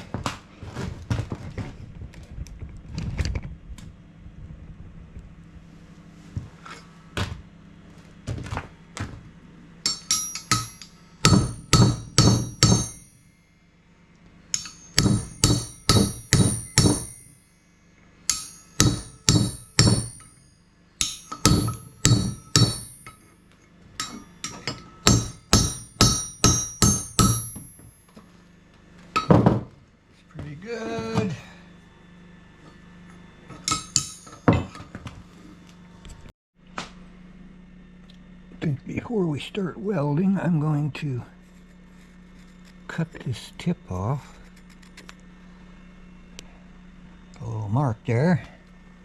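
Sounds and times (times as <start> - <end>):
hammer striking steel: 9.8 - 13.6, 14.5 - 23.4, 24.0 - 28.2, 29.2 - 29.6, 33.5 - 35.0.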